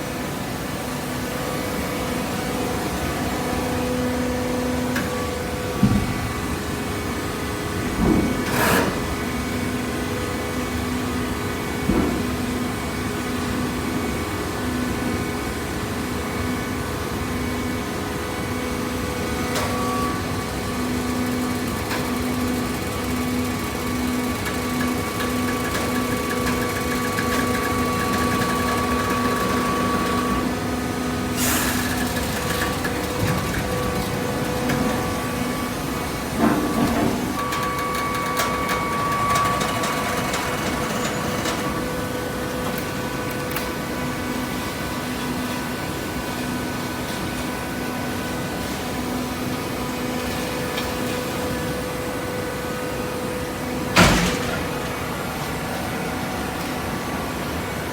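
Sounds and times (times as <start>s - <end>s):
baler machine hum: 18.4s - 44.7s
machine clunks: 53.8s - 55.6s.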